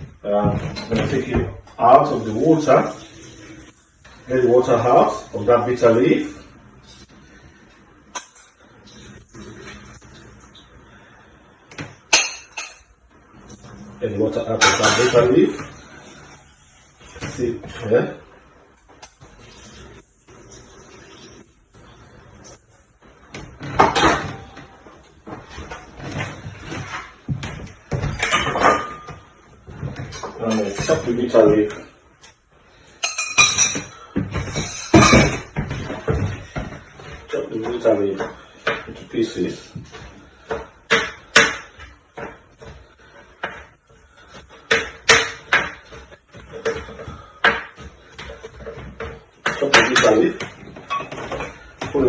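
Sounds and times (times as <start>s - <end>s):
rustling scrapes: 24.4s - 32.0s.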